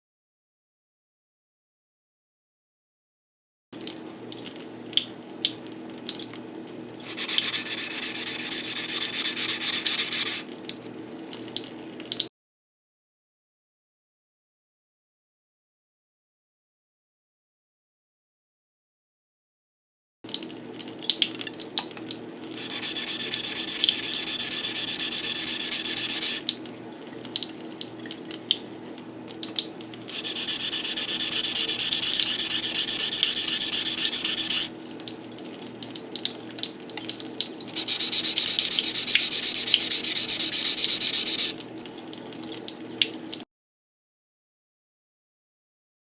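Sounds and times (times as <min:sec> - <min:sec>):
blade scraping on whetstone: 0:07.0 - 0:10.5, 0:22.6 - 0:26.4, 0:30.1 - 0:34.7, 0:37.8 - 0:41.6.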